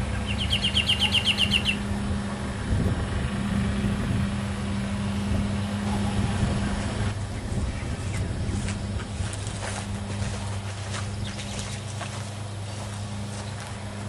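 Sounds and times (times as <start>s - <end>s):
bird chirping trill: 0.0s - 1.9s, 11.0s - 11.9s
low machine hum: 0.0s - 14.0s.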